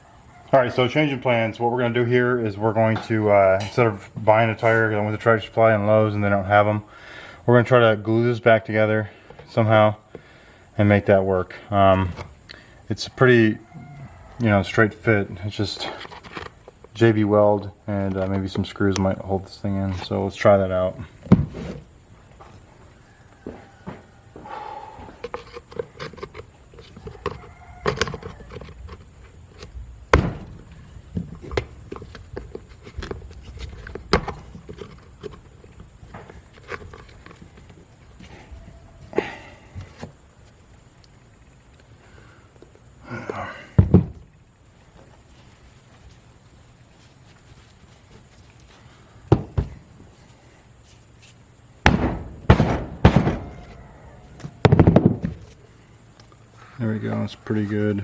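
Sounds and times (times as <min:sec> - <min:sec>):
loud thump: 0:30.1 - 0:30.7, 0:51.8 - 0:53.8, 0:54.6 - 0:55.4
heavy knocking impacts: 0:51.8 - 0:53.8.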